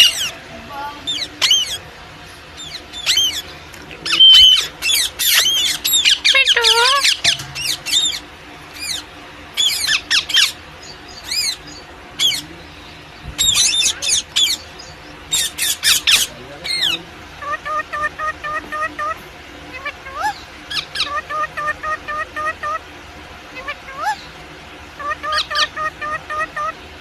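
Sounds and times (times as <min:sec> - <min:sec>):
parrot screeching: 0:00.0 - 0:00.4, 0:01.1 - 0:01.8, 0:02.6 - 0:03.4, 0:04.0 - 0:08.2, 0:15.3 - 0:22.8, 0:23.6 - 0:24.2, 0:25.0 - 0:26.8.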